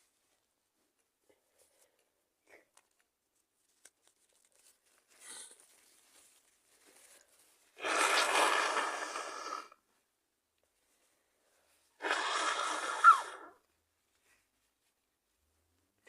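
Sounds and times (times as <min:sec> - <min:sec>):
person sneezing: 0:12.0 - 0:13.5.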